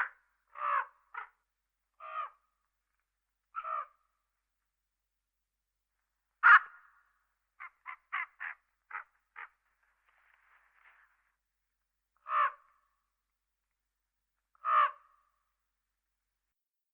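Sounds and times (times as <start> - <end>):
owl harsh call: 0.6 - 1.3, 14.6 - 15.1.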